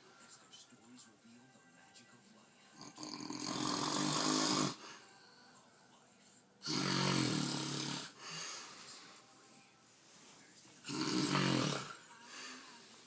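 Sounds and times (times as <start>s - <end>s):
man snoring: 2.8s - 4.8s, 6.6s - 8.4s, 10.8s - 12.1s.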